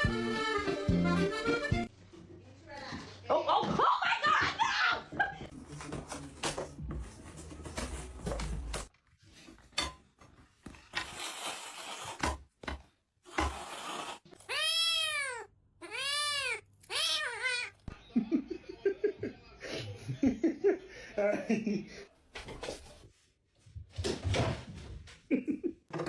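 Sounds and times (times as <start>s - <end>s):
cat meowing: 14.4s - 17.8s.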